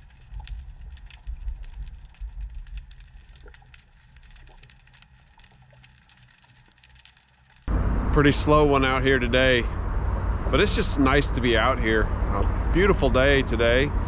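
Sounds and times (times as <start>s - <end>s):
wind rumbling on microphone: 0.0s - 3.4s, 7.7s - 14.0s
faint crackling: 0.0s - 13.8s.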